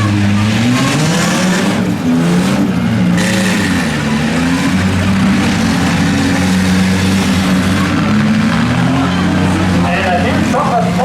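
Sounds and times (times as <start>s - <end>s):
car engines revving: 0.0s - 11.0s.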